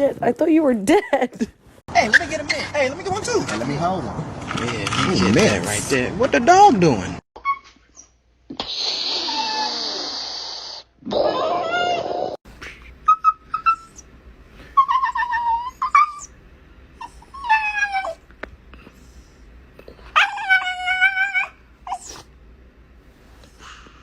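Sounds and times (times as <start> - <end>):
dog whining: 11.0 - 12.4, 13.0 - 16.4, 17.0 - 18.3, 20.0 - 22.3.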